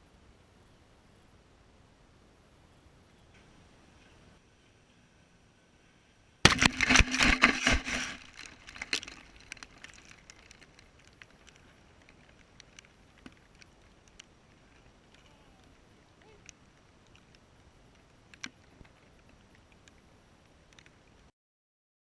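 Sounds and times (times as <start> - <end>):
debris ticks and crackles: 6.4 - 21.3
wood splintering and breaking: 6.5 - 13.7.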